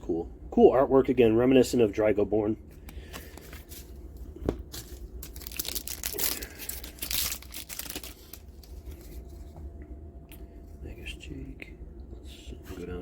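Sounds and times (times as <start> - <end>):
foil wrapper crinkling and tearing: 4.7 - 9.2.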